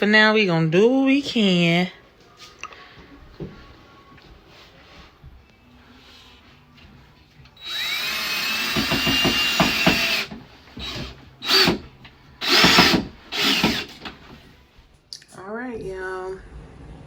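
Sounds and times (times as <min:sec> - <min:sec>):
power drill whining: 0:07.6 - 0:14.2.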